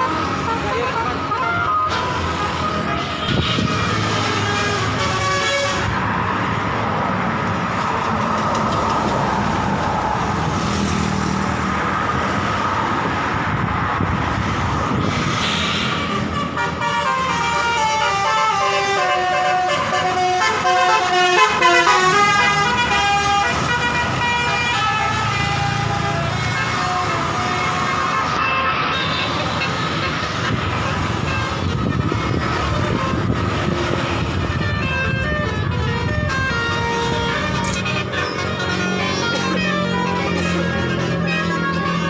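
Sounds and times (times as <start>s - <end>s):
multi-tone bus horn tune: 0.0s - 6.0s, 15.9s - 42.0s
bus engine: 0.0s - 42.0s
traffic noise: 0.0s - 42.0s.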